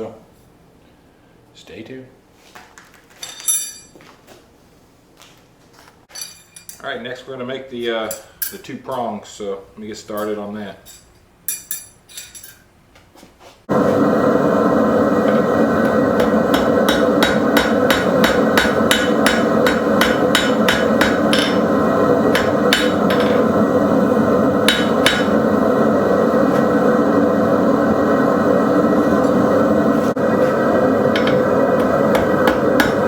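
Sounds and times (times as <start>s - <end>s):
hammer striking metal on anvil: 15.8s - 23.5s, 24.6s - 25.4s, 31.1s - 33.0s.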